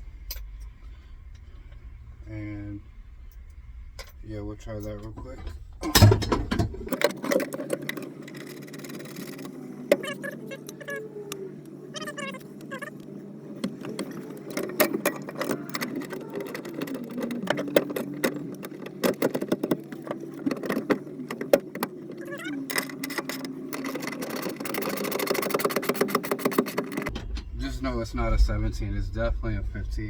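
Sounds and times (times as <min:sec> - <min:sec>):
tools and bolts clinking: 0:04.0 - 0:11.0, 0:11.6 - 0:27.1.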